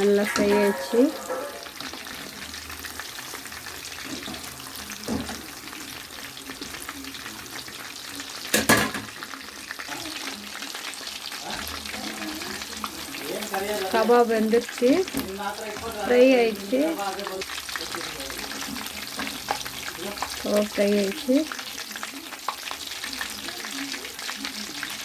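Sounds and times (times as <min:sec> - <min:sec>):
meat sizzling in hot oil: 0:00.0 - 0:25.0.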